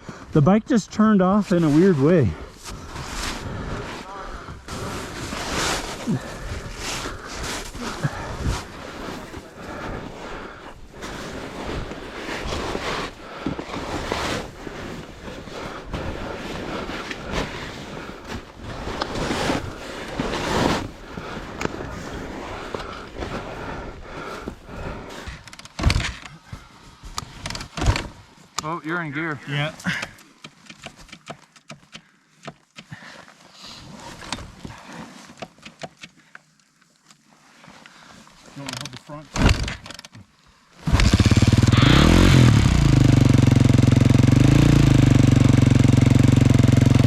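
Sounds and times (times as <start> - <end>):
crunches on packed snow: 1.0 - 25.4.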